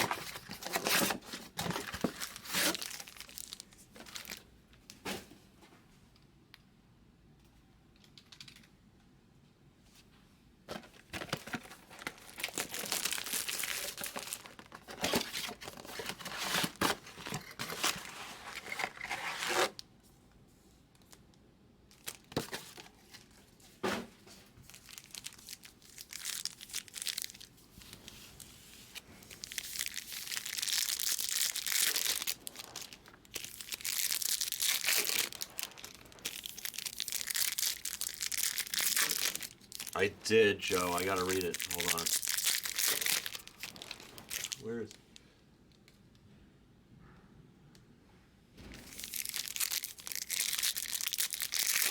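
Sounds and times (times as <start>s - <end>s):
plastic wrapping tearing and crinkling: 0.0s - 4.4s, 11.1s - 19.8s, 21.9s - 23.4s, 24.6s - 44.7s, 48.8s - 51.9s.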